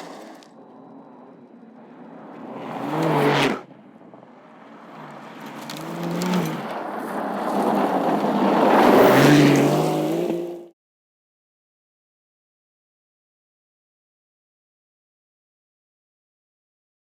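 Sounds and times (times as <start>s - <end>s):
car engine accelerating: 0.0s - 10.7s
rush of driving noise: 0.0s - 10.7s.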